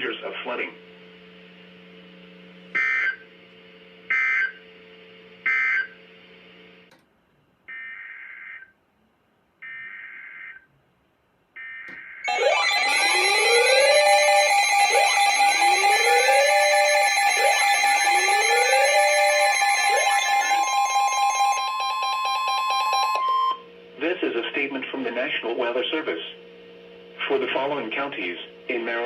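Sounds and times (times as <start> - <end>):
screeching digital data bursts: 12.2 - 23.2
electronic alert tone with sweeps: 12.2 - 23.7.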